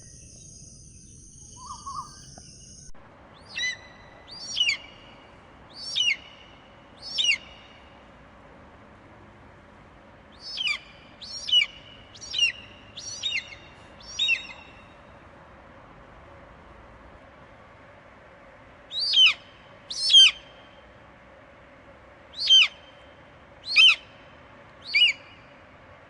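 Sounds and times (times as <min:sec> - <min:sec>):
bird whistling sharp notes: 0:00.0 - 0:02.9
faint steady hiss: 0:00.0 - 0:26.0.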